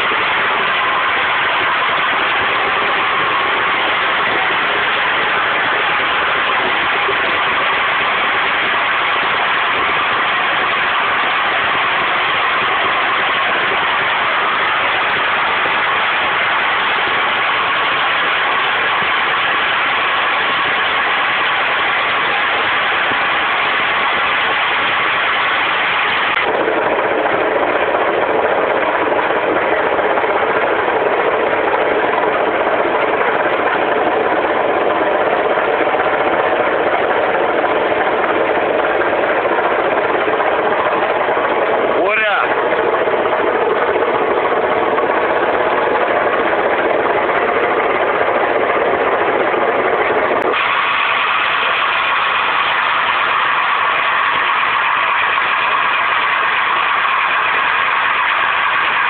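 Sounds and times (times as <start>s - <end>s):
gas jetting under pressure: 0.0s - 26.6s, 50.4s - 59.0s.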